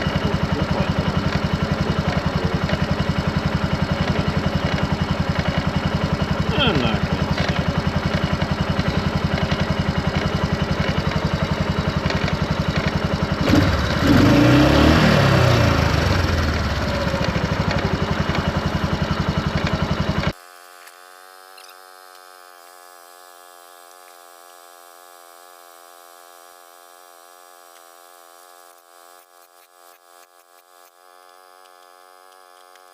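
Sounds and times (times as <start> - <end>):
atv engine idling and revving: 0.0 - 20.4.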